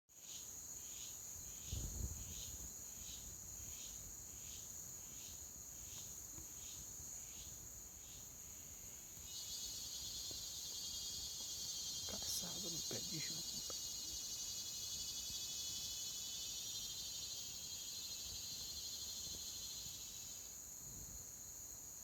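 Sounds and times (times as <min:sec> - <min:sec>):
insect chirping: 0:00.1 - 0:22.0
dense insect buzz: 0:00.2 - 0:22.0
insects droning: 0:00.2 - 0:22.0.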